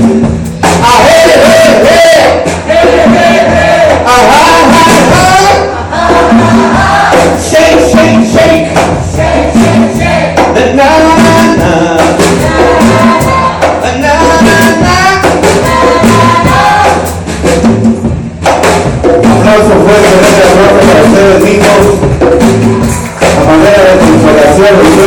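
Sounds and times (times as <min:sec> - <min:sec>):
live rock music: 0:00.0 - 0:25.0
group of voices singing along: 0:00.8 - 0:17.3
tambourine-like percussion: 0:21.6 - 0:24.4.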